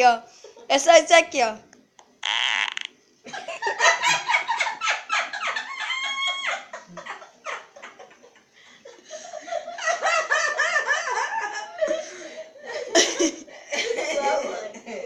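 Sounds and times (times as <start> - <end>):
hearty gasping laughter: 8.4 - 14.0.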